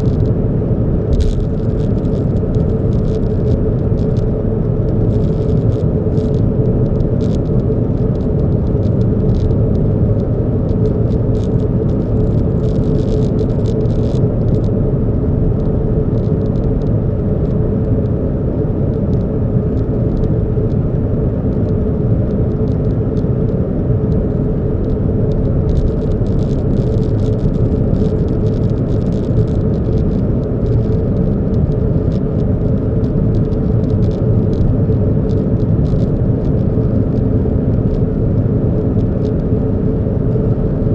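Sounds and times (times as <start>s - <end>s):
car engine and road noise: 0.0s - 40.9s
constant hum: 0.0s - 40.9s
light ticks and rattles: 1.1s - 4.3s, 4.9s - 14.7s, 24.1s - 36.2s.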